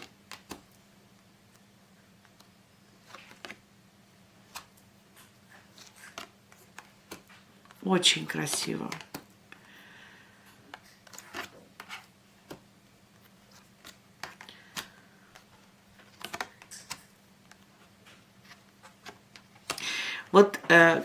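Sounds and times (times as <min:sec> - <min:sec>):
cards clicking and rustling: 0:00.0 - 0:00.8, 0:02.2 - 0:03.6, 0:04.4 - 0:07.8, 0:10.4 - 0:19.9
faint steady hum: 0:00.0 - 0:21.0.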